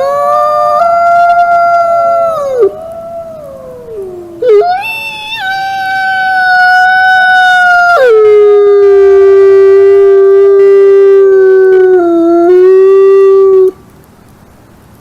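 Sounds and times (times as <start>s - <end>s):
wolves howling: 0.0s - 9.1s.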